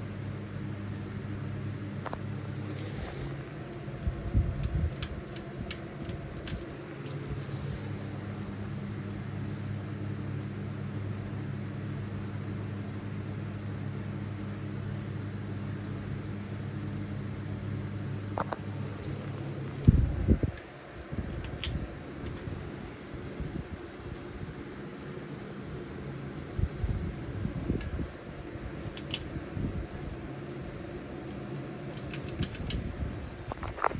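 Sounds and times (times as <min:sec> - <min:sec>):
ceiling fan motor hum: 0:00.0 - 0:33.9
light metallic ticks: 0:28.8 - 0:29.3.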